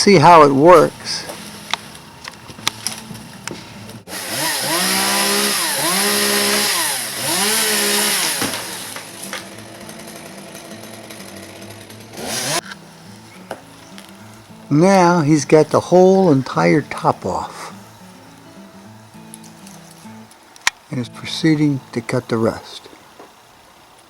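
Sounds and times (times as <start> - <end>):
chainsaw revving: 4.0 - 12.8.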